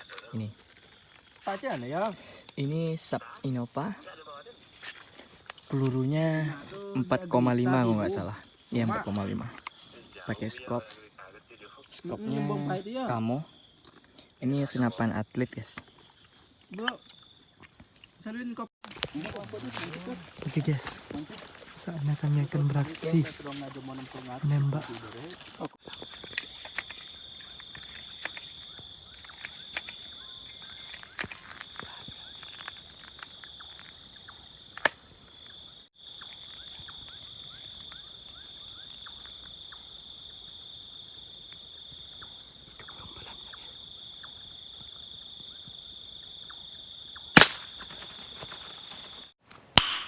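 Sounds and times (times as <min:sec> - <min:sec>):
insects buzzing: 0:00.0 - 0:49.4
air rifle shot: 0:47.4 - 0:47.7.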